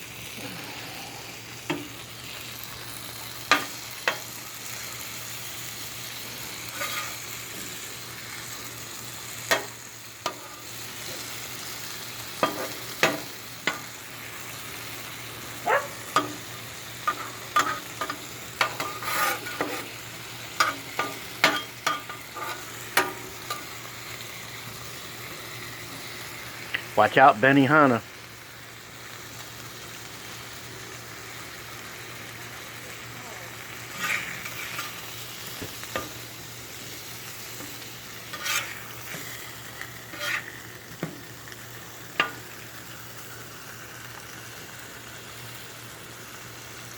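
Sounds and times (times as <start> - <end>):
food sizzling on a griddle: 0.0 - 46.9
metal utensil scraping griddle: 2.8 - 4.9, 6.1 - 8.4, 9.2 - 15.0, 15.6 - 24.0, 33.7 - 41.3, 42.1 - 42.6.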